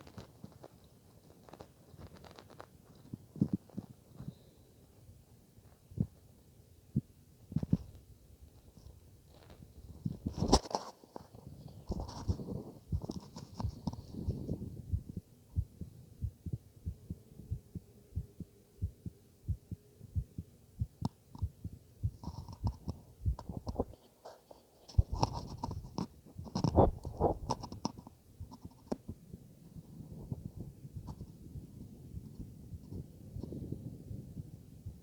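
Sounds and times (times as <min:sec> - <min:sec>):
heartbeat thumps through stethoscope: 0:11.9 - 0:23.9, 0:25.0 - 0:27.6.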